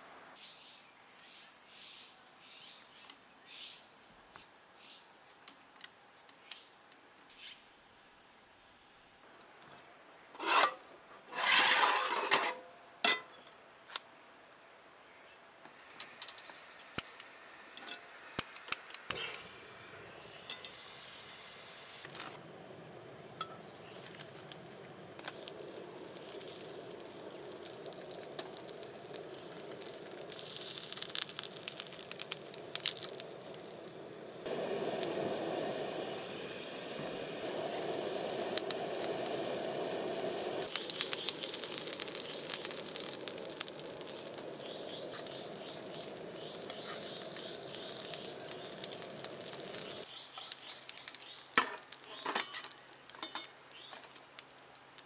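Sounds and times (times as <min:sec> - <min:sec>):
small crackles and clicks: 0:15.6 - 0:22.4, 0:23.3 - 0:55.0
steady hissing: 0:15.6 - 0:55.0.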